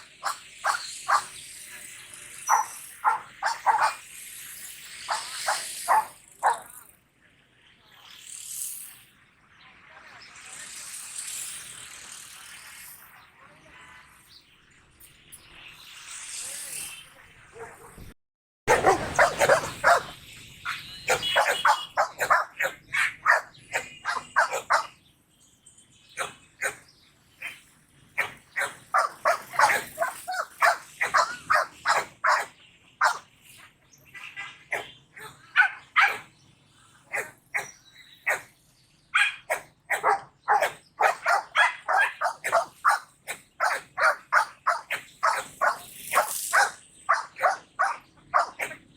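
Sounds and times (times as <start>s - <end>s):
dog barking: 0.0s - 1.3s, 2.5s - 4.0s, 5.1s - 6.7s, 17.6s - 18.0s, 18.7s - 25.0s, 28.2s - 33.2s, 34.7s - 36.3s, 37.1s - 37.7s, 38.3s - 38.5s, 39.2s - 43.0s, 43.6s - 48.8s.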